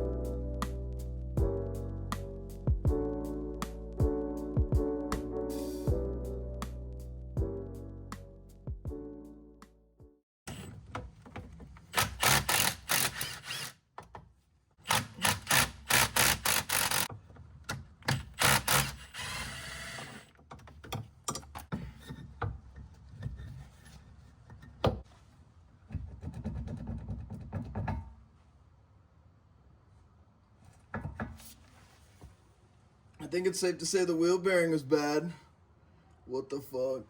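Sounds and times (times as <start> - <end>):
tool clatter and knocks: 30.9 - 31.4.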